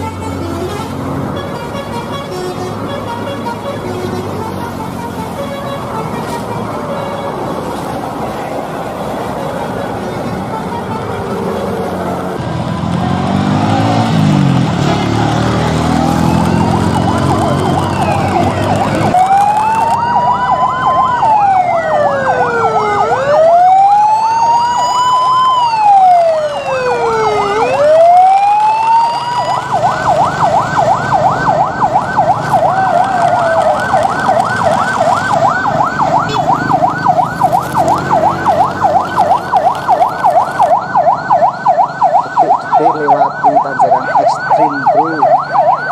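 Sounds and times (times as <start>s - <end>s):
siren wailing and yelping: 15.3s - 45.9s.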